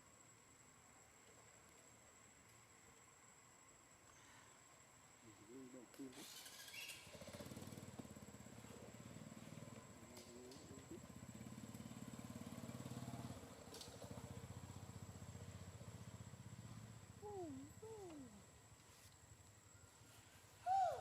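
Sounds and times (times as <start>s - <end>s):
small engine running: 6.2s - 17.2s
short falling calls: 20.6s - 21.0s.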